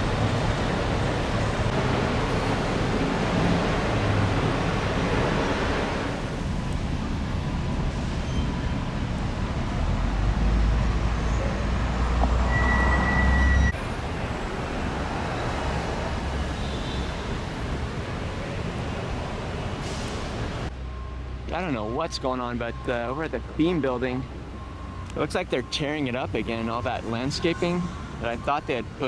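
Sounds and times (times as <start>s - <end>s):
road traffic passing: 0.0s - 29.0s.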